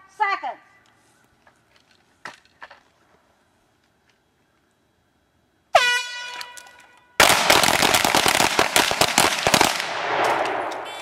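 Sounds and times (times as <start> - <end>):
rapid gunfire volley: 7.2 - 10.7.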